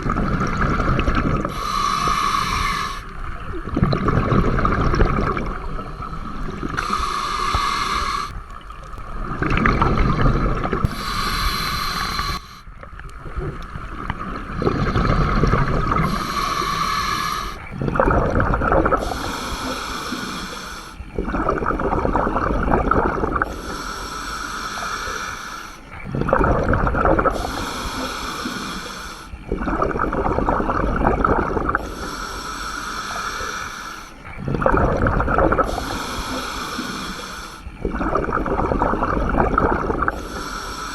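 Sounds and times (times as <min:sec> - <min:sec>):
bubbling exhale: 0:00.0 - 0:40.9
regulator hissing inhale: 0:01.3 - 0:03.6, 0:05.1 - 0:08.4, 0:10.2 - 0:12.8, 0:14.8 - 0:17.8, 0:19.0 - 0:21.1, 0:23.4 - 0:26.0, 0:27.3 - 0:29.5, 0:31.5 - 0:34.4, 0:35.3 - 0:37.8, 0:39.7 - 0:40.9.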